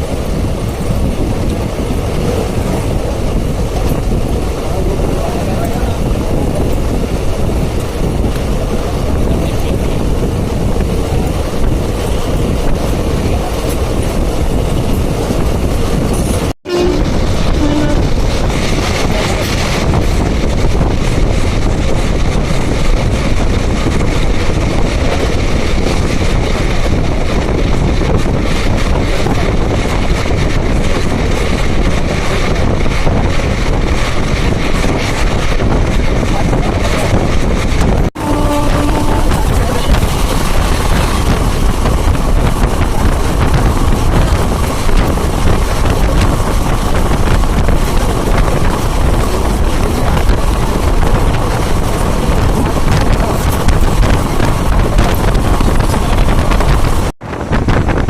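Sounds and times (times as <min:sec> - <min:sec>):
train wheel and track noise: 0:00.0 - 0:58.0
wind buffeting microphone: 0:00.0 - 0:58.0
short train horn note: 0:16.6 - 0:18.3, 0:38.2 - 0:39.8.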